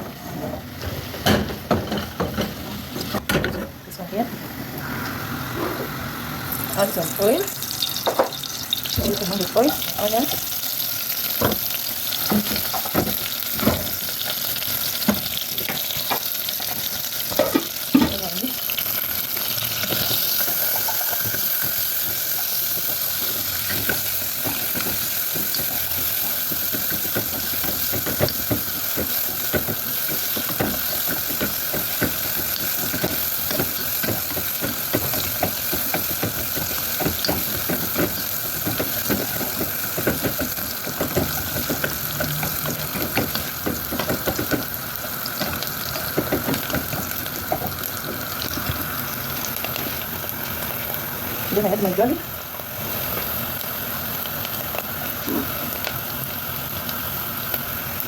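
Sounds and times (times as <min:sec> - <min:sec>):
onions sizzling in a pan: 0:00.0 - 0:03.3, 0:04.0 - 0:58.0.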